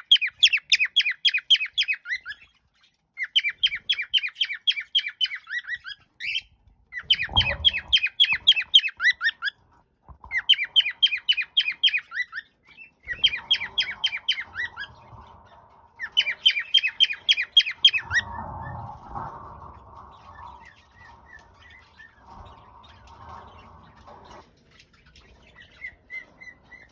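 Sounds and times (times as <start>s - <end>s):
faint bird chirps: 0.0s - 9.6s, 10.2s - 26.9s
soft even noise: 13.0s - 26.7s.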